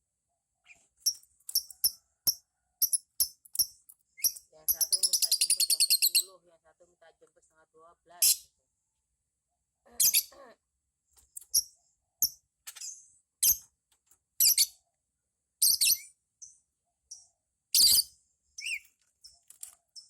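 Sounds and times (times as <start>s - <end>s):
lovebird high-pitched calls: 0.6s - 6.3s, 10.0s - 10.3s, 14.4s - 14.8s, 15.6s - 16.5s, 17.8s - 18.9s.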